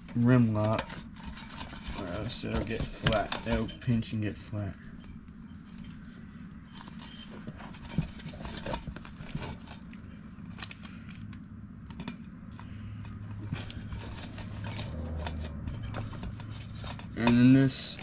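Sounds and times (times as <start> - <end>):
low hum: 0.0 - 18.0
clicks and scrapes of inner tube: 4.7 - 18.0.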